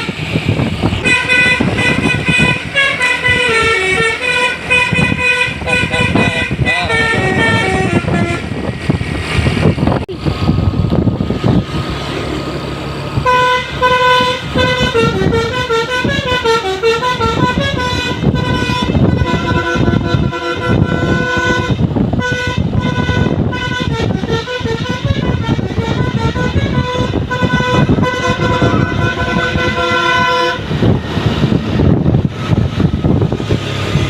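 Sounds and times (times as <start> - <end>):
bus engine: 0.0 - 34.0
road and traffic noise: 0.0 - 34.0
musical air horn tune: 1.0 - 8.6, 13.2 - 30.8.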